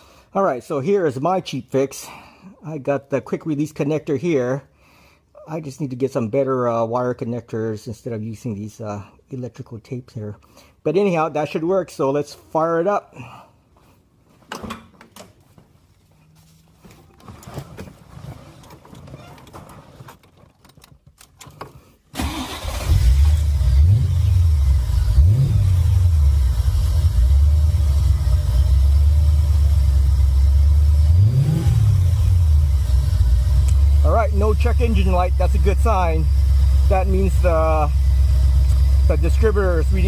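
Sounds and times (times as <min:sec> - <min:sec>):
car engine starting and idling: 0:21.2 - 0:40.0
engine revving: 0:22.2 - 0:40.0.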